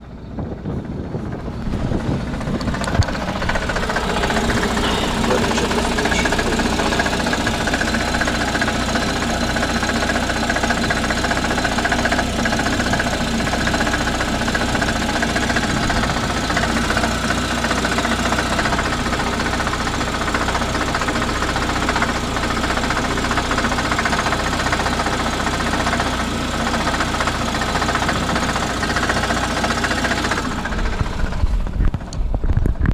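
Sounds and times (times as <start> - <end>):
car engine idling: 0.0 - 32.9
gearbox knocking: 1.8 - 19.7.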